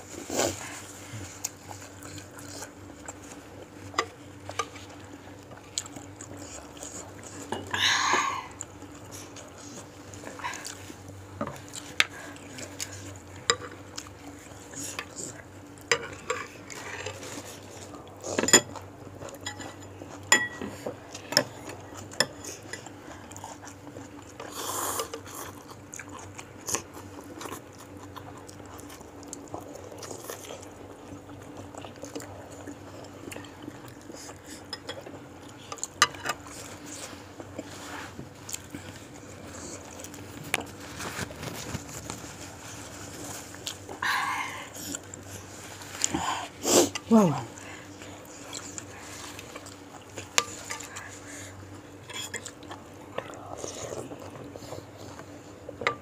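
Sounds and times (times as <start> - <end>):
quiet eating sounds: 0.0 - 56.0
cutlery clinking against bowl: 19.4 - 20.7.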